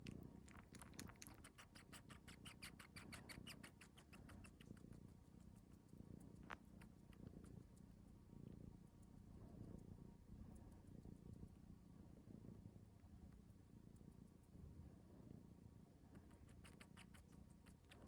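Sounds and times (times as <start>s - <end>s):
cat sucking clicks: 0.0s - 4.8s.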